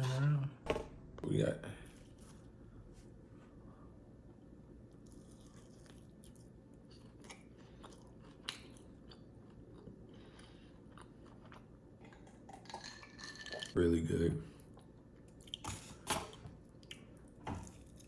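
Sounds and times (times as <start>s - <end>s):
person chewing food: 4.9s - 13.8s, 14.6s - 18.0s.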